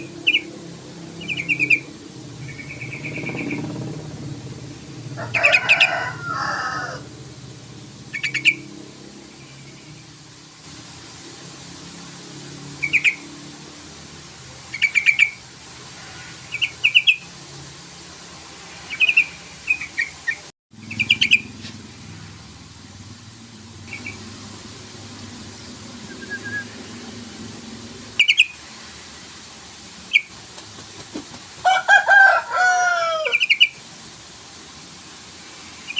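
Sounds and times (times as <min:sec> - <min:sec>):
bird chattering calls: 0:01.2 - 0:03.8, 0:08.1 - 0:08.7, 0:12.8 - 0:13.2, 0:14.7 - 0:15.4, 0:16.5 - 0:17.3, 0:18.9 - 0:21.6, 0:23.8 - 0:24.3, 0:28.1 - 0:28.6, 0:33.3 - 0:33.8.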